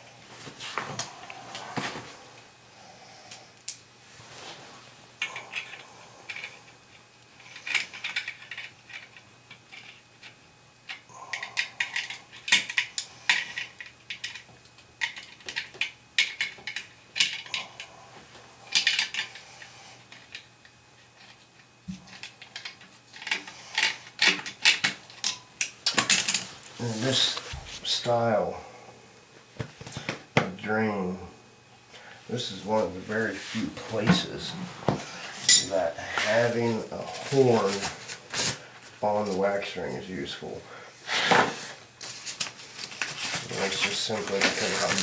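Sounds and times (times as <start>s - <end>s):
tools clinking and clattering: 35.4s - 35.8s.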